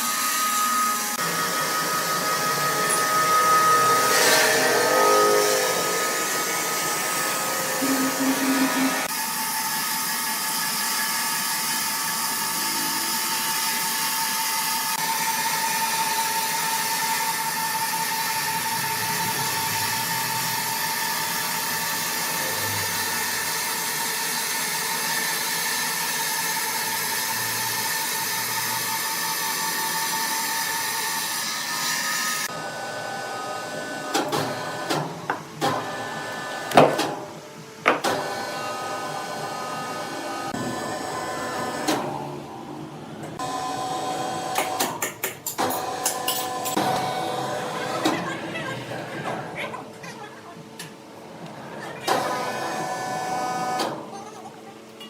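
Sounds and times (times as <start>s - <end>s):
sawmill machinery whining: 0.0s - 34.0s.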